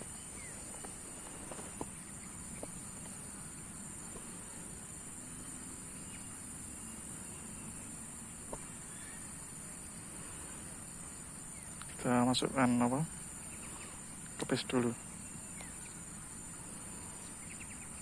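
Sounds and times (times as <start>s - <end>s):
insects chirping: 0.0s - 18.0s
faint sharp clicks: 15.6s - 15.8s.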